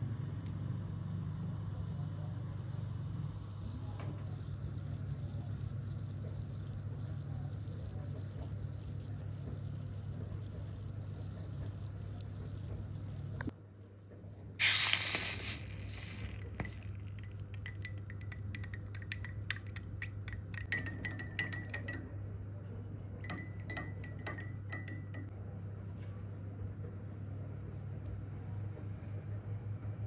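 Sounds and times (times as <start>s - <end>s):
short loud rush of noise: 14.6s - 16.4s
metal spoon clinking in a glass: 16.2s - 22.1s, 23.2s - 25.3s.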